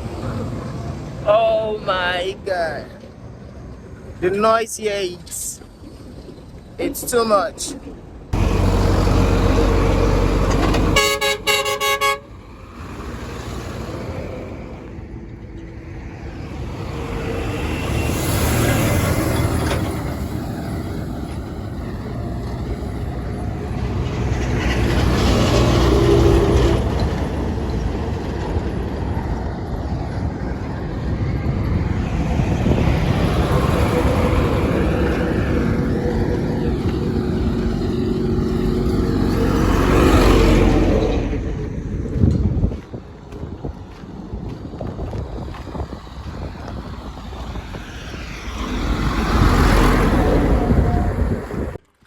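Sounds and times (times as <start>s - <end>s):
heavy machinery rumbling: 7.8s - 44.7s
horn tooting: 9.4s - 12.4s.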